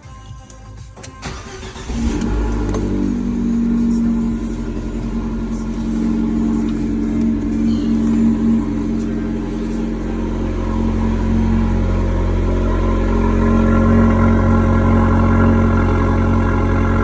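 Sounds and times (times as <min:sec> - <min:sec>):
car engine starting and running: 0:00.2 - 0:17.0
clicks: 0:00.4 - 0:03.1.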